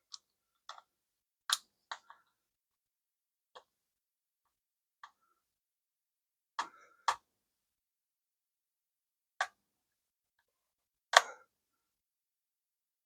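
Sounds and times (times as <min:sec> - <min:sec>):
plastic parts clicking and knocking: 0:00.0 - 0:00.9, 0:01.5 - 0:02.3, 0:06.6 - 0:07.2.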